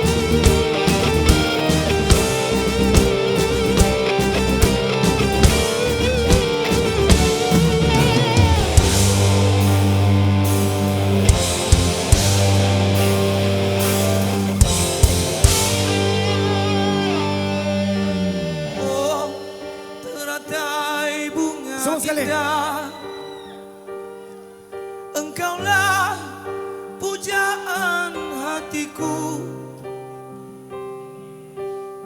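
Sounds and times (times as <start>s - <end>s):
bass guitar: 0.0s - 19.6s
electric guitar lead: 0.0s - 21.2s
drums: 0.0s - 22.2s
person singing: 15.8s - 23.8s, 25.1s - 29.8s.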